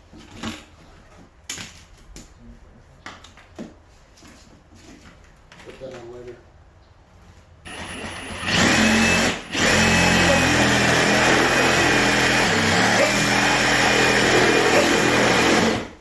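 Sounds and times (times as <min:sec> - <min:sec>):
power saw cutting: 0:07.7 - 0:16.0.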